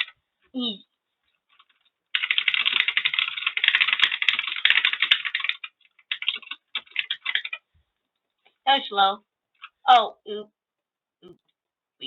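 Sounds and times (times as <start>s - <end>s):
fast typing on computer keyboard: 1.5s - 7.7s.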